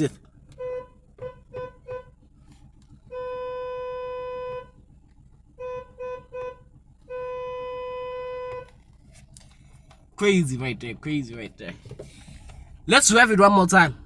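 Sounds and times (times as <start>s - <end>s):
car horn honking: 0.0s - 2.2s, 3.1s - 4.8s, 5.5s - 8.8s.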